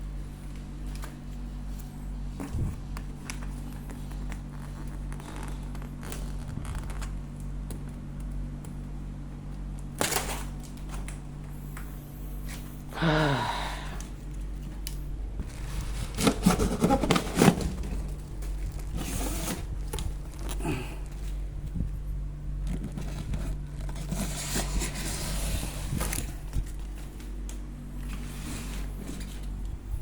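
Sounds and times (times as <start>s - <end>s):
steady low hum: 0.0s - 30.0s
handling scraping and knocking: 15.4s - 20.5s.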